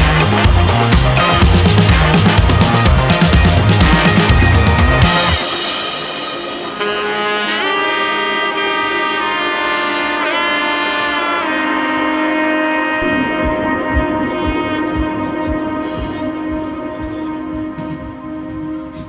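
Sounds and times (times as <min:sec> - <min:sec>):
soft low beat: 0:00.0 - 0:05.5, 0:13.0 - 0:19.0
melody with sweeping pitch bends: 0:00.0 - 0:19.0.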